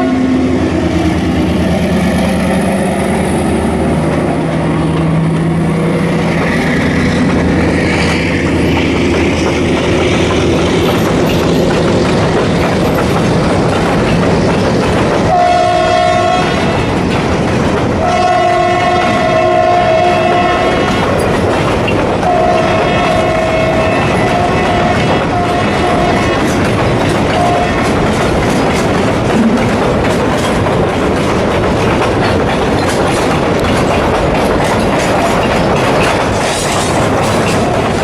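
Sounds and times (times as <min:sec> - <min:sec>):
train horn blasts: 0:00.0 - 0:00.6, 0:15.3 - 0:16.9, 0:18.0 - 0:21.1, 0:22.2 - 0:26.5, 0:27.3 - 0:28.0
train wheels clattering: 0:00.2 - 0:38.0
locomotive engine pulling: 0:00.3 - 0:38.0.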